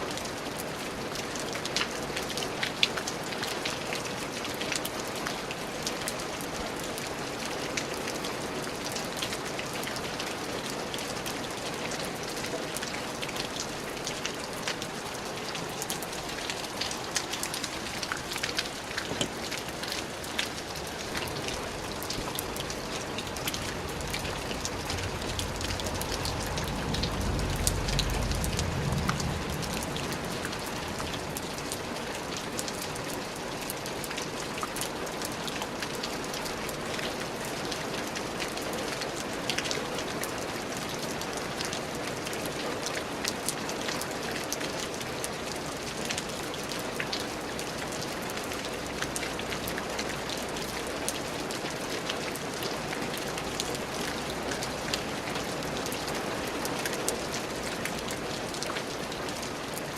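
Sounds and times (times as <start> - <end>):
steady rain falling: 0.0 - 59.9
low rumble: 21.7 - 31.4.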